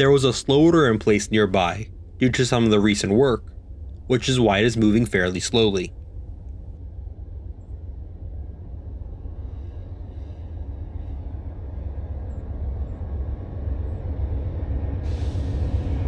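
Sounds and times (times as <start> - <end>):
train low rumble: 0.0 - 16.0
train hiss: 9.1 - 16.0.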